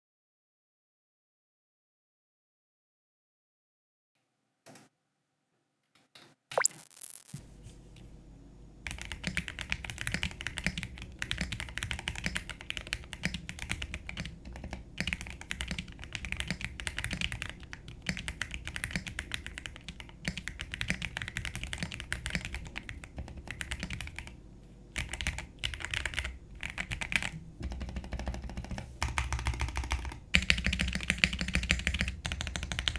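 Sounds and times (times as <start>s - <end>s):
mechanical keyboard typing: 6.5s - 7.4s, 9.0s - 24.3s, 25.0s - 32.9s.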